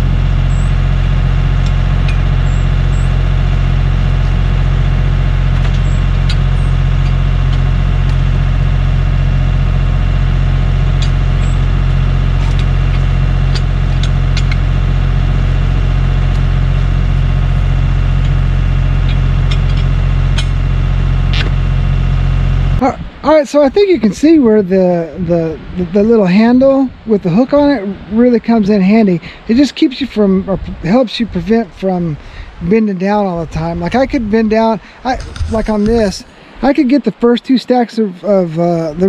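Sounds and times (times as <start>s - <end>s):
engine idling: 0.0s - 39.0s.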